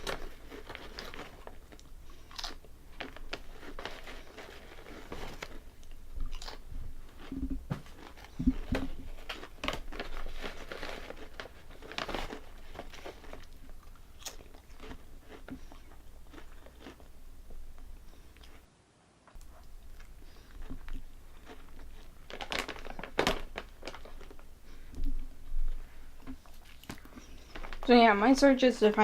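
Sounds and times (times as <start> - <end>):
potato chips crunching: 0.0 - 18.6, 19.4 - 25.4, 26.2 - 29.0
dull thumps: 7.3 - 9.2.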